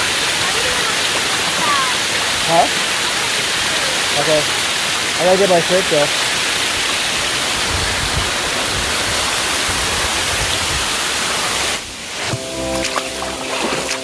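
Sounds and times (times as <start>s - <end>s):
waterfall rushing: 0.0s - 14.0s
background music with held notes: 12.3s - 14.0s.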